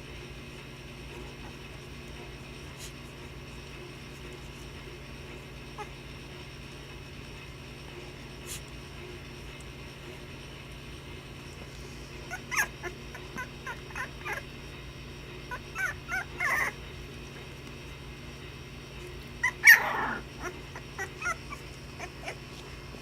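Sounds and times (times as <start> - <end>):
puppies yipping and whimpering: 5.7 - 6.0, 12.2 - 14.6, 15.5 - 16.9, 19.4 - 22.8
puppy yelp: 12.3 - 14.5, 15.5 - 16.8, 19.4 - 22.6.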